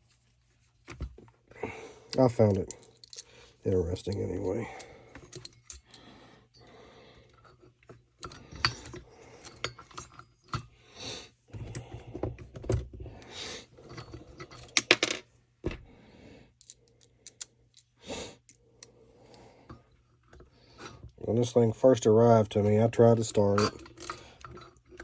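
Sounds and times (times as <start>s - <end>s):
small parts and tools clinking: 2.1s - 10.7s, 13.8s - 15.3s, 16.6s - 19.0s, 22.6s - 25.0s.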